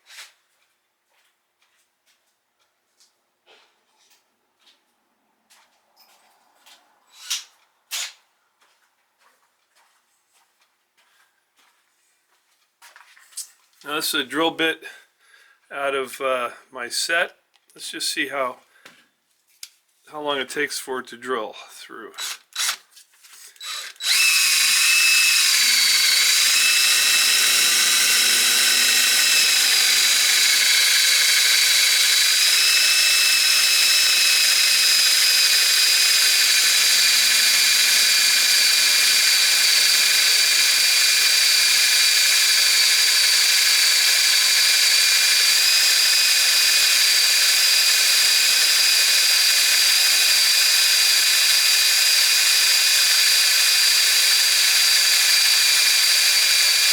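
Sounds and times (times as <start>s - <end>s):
power drill whining: 22.2s - 22.8s, 23.4s - 56.9s.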